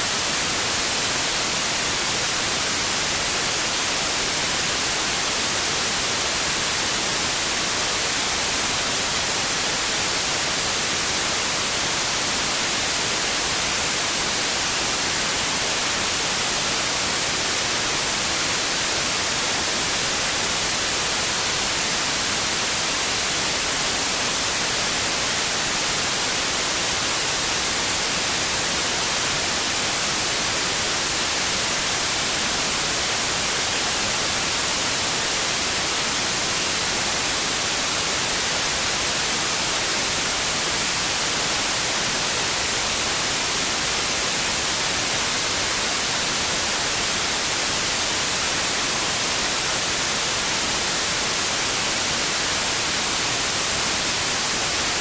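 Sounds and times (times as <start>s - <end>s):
white noise hiss: 0.0s - 55.0s.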